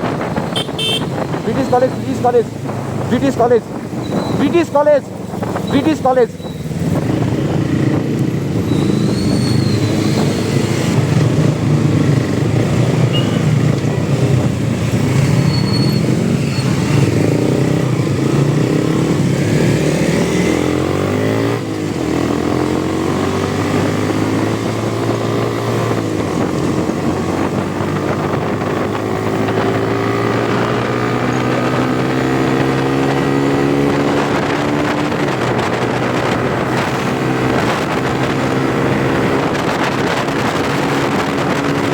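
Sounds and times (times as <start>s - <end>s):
motorcycle engine running: 0.0s - 4.5s, 5.1s - 41.9s.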